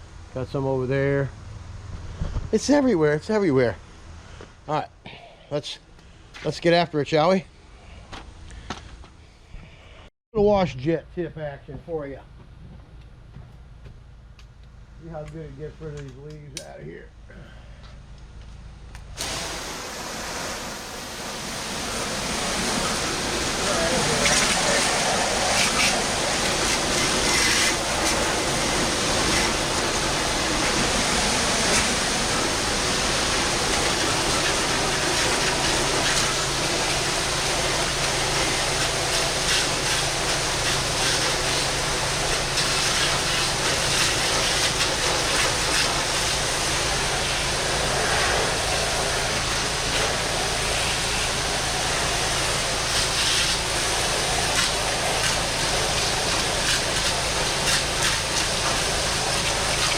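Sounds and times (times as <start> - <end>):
low hum: 17.0 - 42.3
pressure washer water jet hissing: 19.2 - 59.9.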